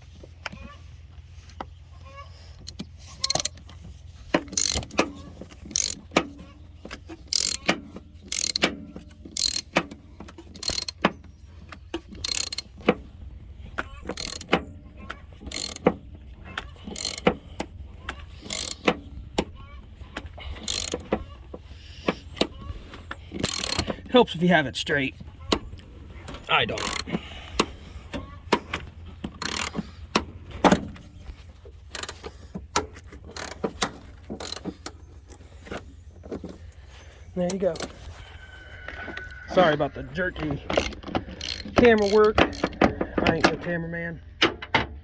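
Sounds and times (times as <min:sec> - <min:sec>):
ratchet wrench clicking: 0:02.7 - 0:03.5, 0:04.4 - 0:05.0, 0:05.6 - 0:06.2, 0:07.3 - 0:11.1, 0:12.0 - 0:12.7, 0:14.1 - 0:14.6, 0:15.4 - 0:16.0, 0:16.9 - 0:17.5, 0:18.3 - 0:19.0, 0:20.6 - 0:21.2, 0:23.4 - 0:23.9, 0:26.8 - 0:27.8, 0:29.4 - 0:30.2, 0:31.9 - 0:35.0, 0:40.8 - 0:42.8.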